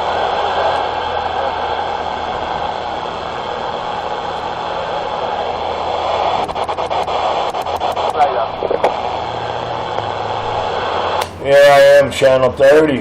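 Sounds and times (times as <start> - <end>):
radio static hiss: 0.0 - 13.0
channel selector clicks: 11.2 - 11.4.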